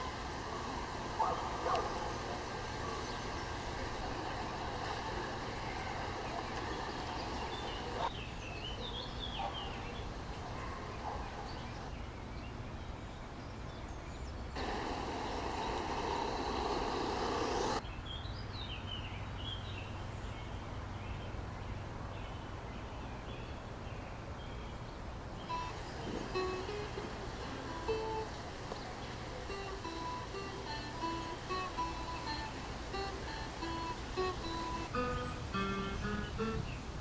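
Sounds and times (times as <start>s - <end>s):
birds chirping: 0.0s - 37.0s
steady low hum: 14.6s - 17.8s.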